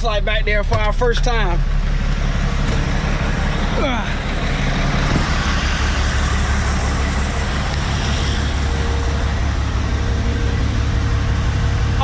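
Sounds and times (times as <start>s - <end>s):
faint whine: 0.0s - 12.0s
truck engine running: 0.0s - 12.0s
loud rushing noise: 2.3s - 12.0s.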